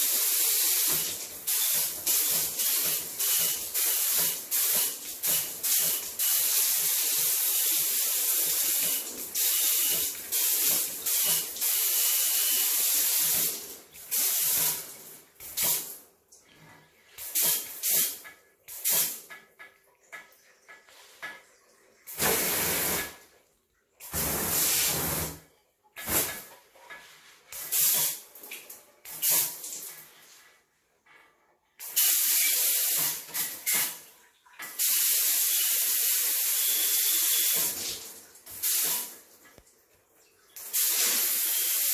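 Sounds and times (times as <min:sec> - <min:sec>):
water spraying in hissing spurts: 0:00.0 - 0:16.0, 0:22.0 - 0:23.3, 0:40.6 - 0:41.9.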